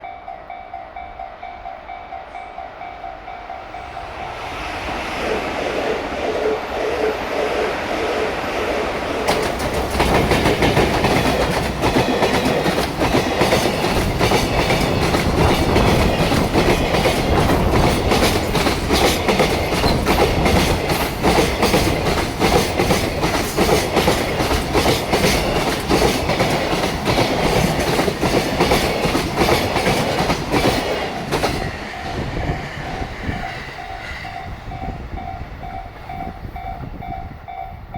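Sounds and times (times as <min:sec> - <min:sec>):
train wheels clattering over rail joints: 0:09.1 - 0:33.5.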